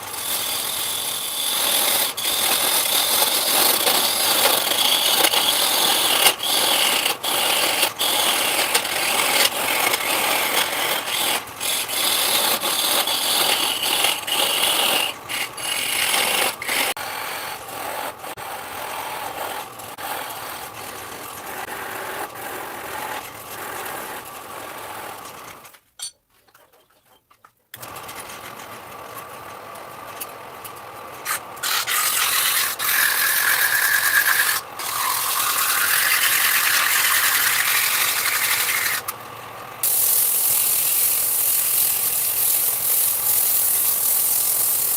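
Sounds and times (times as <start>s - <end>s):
power tool grinding wood: 0.0s - 25.6s, 31.3s - 39.1s.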